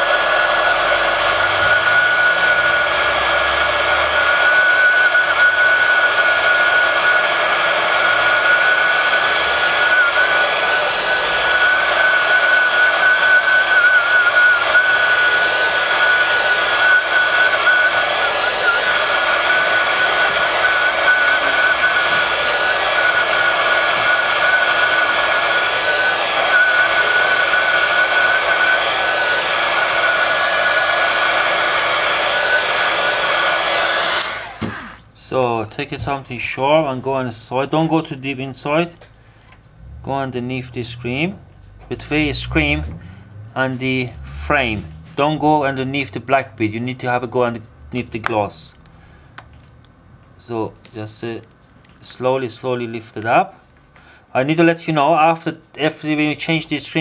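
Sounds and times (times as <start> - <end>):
hot-air blower rushing with whistle: 0.0 - 36.6, 39.8 - 46.2.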